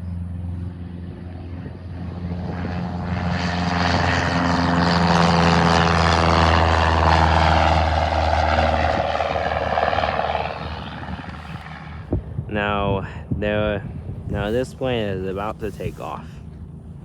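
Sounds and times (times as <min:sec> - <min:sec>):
propeller plane engine drone: 0:00.0 - 0:17.0.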